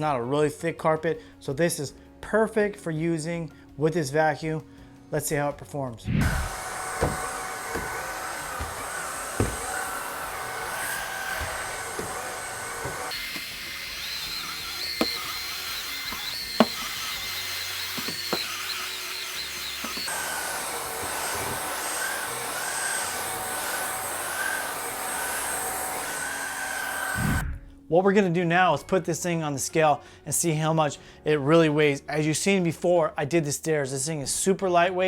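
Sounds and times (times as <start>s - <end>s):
stick vacuum whine: 6.1s - 27.4s
knocks and clicks: 6.4s - 15.4s, 16.0s - 17.0s.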